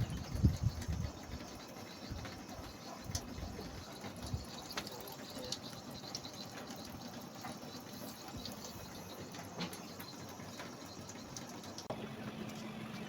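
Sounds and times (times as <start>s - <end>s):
small water drips: 0.0s - 13.0s
water running with steady hiss: 0.0s - 13.0s.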